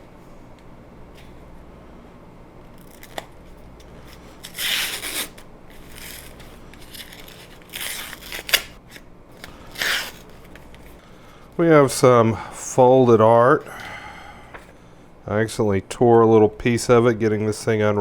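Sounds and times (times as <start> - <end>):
plastic wrap tearing: 2.7 - 10.8.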